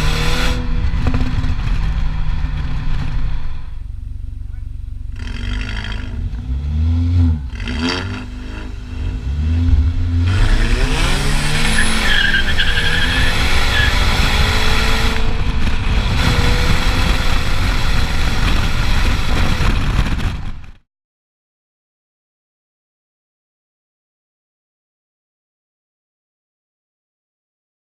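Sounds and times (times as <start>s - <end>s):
car engine revving: 0.0s - 20.6s
loud steady rushing noise: 8.2s - 20.6s.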